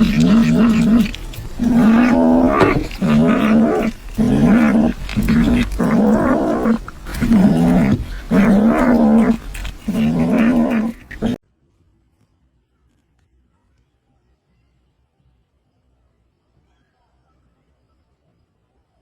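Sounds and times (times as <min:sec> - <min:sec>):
cat breathing: 0:00.0 - 0:11.4
cat yowling: 0:00.0 - 0:11.4.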